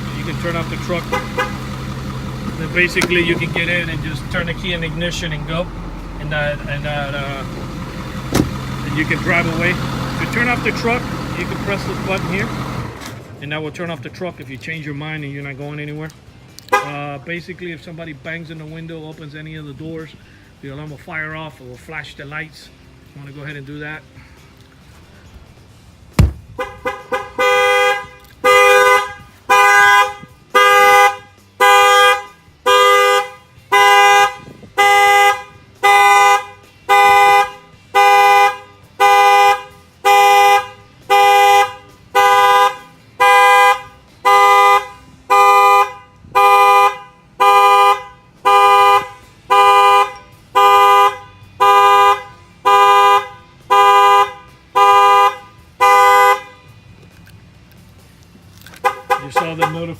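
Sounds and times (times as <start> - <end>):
car horn blasting: 0.0 - 11.0, 26.5 - 56.8, 58.8 - 59.9
sharp knock: 26.2 - 26.5.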